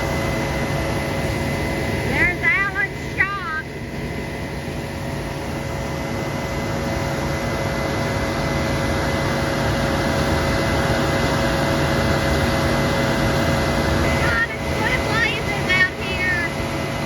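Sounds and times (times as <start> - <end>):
combine harvester running: 0.0 - 17.0.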